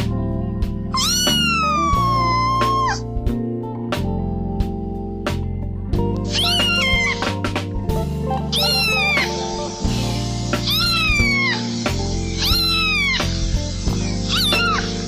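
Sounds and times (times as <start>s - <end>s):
background music: 0.0s - 15.0s
cat meowing: 1.0s - 3.0s, 6.3s - 7.3s, 8.5s - 9.4s, 10.6s - 15.0s.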